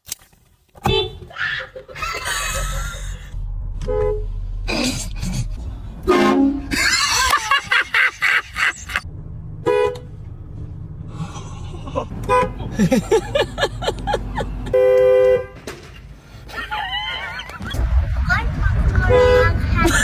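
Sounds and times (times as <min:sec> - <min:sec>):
car horn honking: 0:00.8 - 0:01.3, 0:03.7 - 0:04.5, 0:06.0 - 0:06.9, 0:09.6 - 0:10.3, 0:12.2 - 0:12.7, 0:13.9 - 0:15.8, 0:19.1 - 0:19.6.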